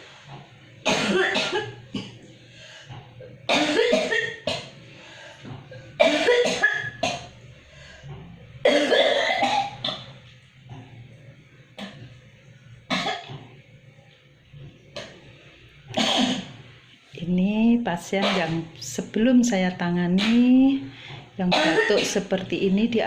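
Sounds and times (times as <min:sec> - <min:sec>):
person coughing: 0:00.9 - 0:02.2, 0:03.5 - 0:04.7, 0:05.8 - 0:07.3, 0:08.6 - 0:10.0, 0:16.0 - 0:16.5, 0:18.2 - 0:18.6, 0:21.5 - 0:22.2.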